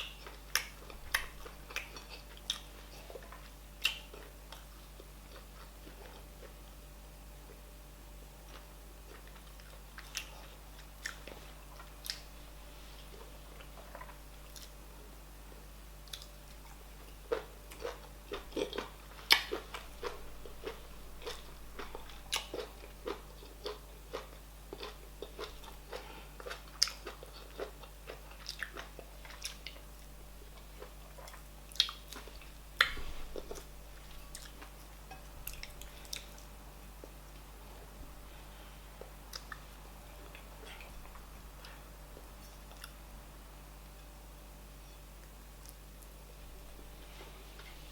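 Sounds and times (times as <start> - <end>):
chewing with wet mouth smacks: 0.0 - 6.6, 8.5 - 12.3, 16.0 - 37.2, 39.0 - 43.0.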